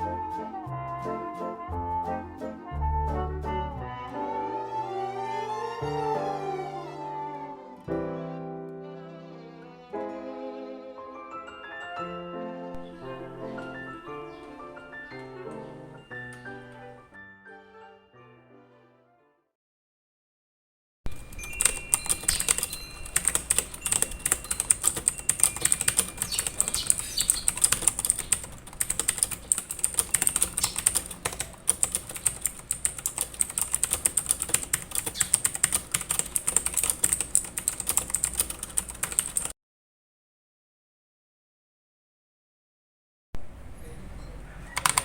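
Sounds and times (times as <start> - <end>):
mechanical keyboard typing: 21.2 - 39.5, 44.8 - 45.0.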